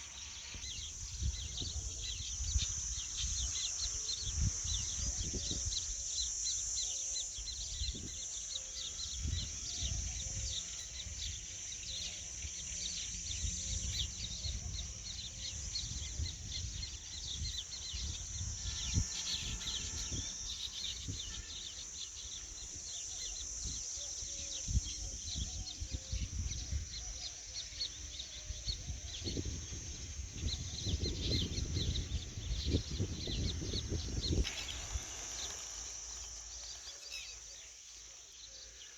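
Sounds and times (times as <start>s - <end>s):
wind rumble on microphone: 0.0s - 6.0s, 7.5s - 8.2s, 9.0s - 11.4s, 12.4s - 21.6s, 23.5s - 36.2s
insect drone: 0.0s - 38.9s.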